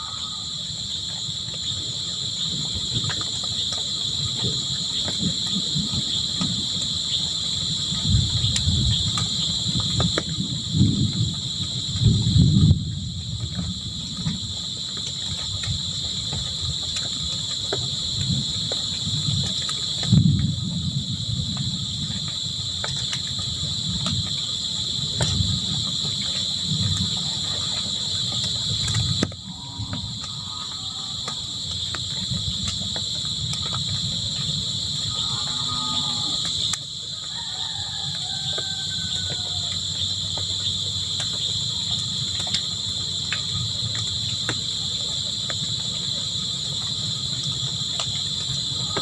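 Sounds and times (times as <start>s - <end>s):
faint pitched calls: 0.0s - 0.9s
crickets trilling: 0.0s - 49.0s.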